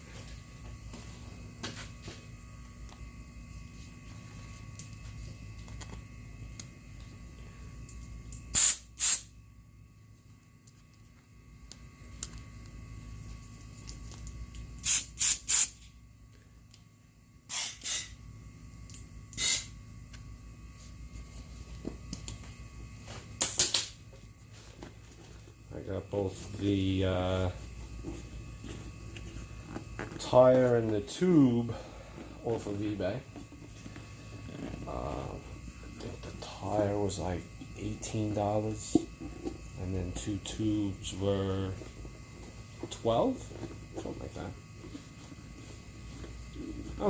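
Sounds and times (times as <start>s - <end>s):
low steady hum: 0.0s - 47.0s
short hissing sprays: 8.5s - 9.3s, 14.8s - 15.8s.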